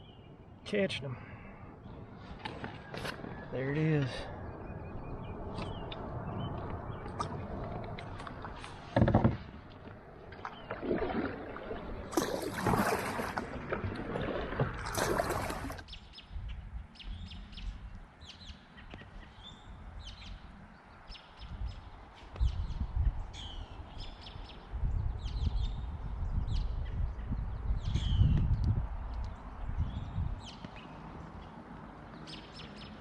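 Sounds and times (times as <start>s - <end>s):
small birds chirping: 0.0s - 8.8s, 15.8s - 33.0s
low wind rumble: 0.0s - 33.0s
water splashing around kayak: 5.5s - 15.9s.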